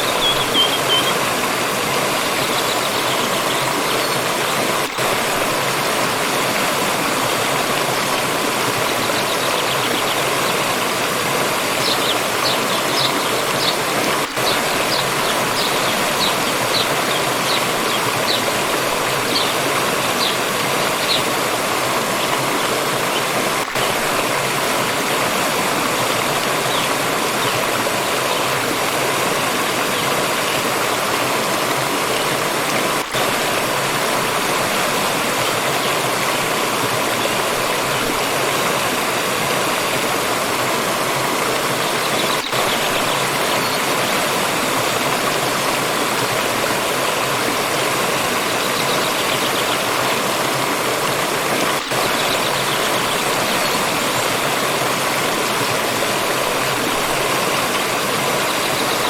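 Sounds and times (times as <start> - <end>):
high bird chirps: 0.0 - 1.2
stream flowing over rocks: 0.0 - 59.0.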